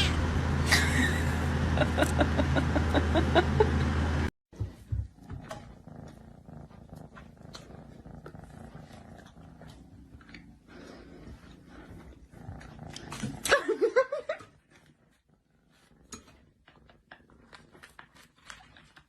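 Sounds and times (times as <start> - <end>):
cat purring: 4.6 - 13.5, 14.2 - 19.0.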